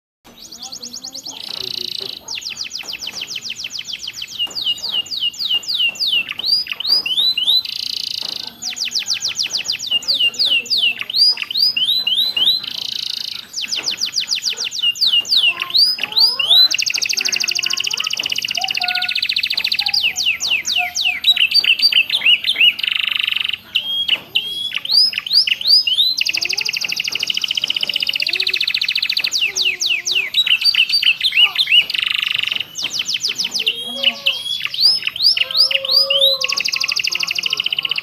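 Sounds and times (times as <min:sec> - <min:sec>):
canary singing: 0:00.3 - 0:38.0.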